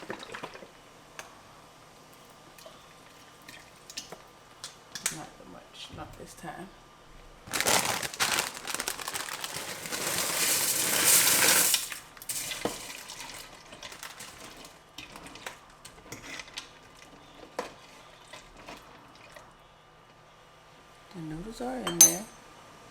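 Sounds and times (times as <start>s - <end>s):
utensil clinking against pot: 21.9s - 22.4s.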